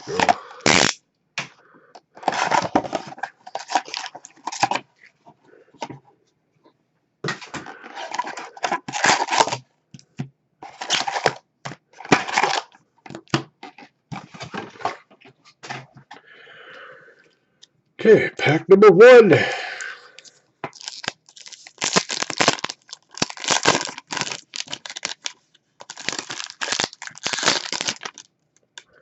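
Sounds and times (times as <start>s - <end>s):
plastic wrap crinkling and tearing: 0.0s - 1.0s, 2.2s - 4.8s, 7.8s - 9.6s, 10.7s - 11.4s, 12.0s - 13.3s, 20.2s - 28.3s.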